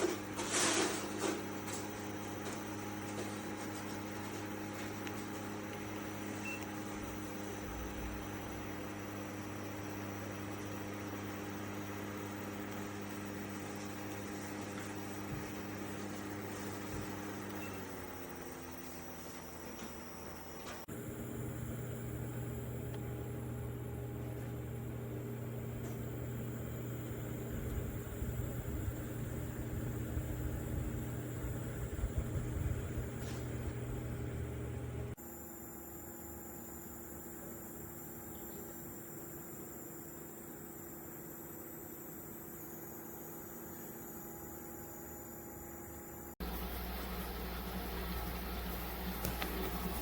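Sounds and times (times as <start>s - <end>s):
air cooler fan humming: 0.0s - 35.2s, 45.0s - 50.0s
high beep: 6.4s - 6.8s.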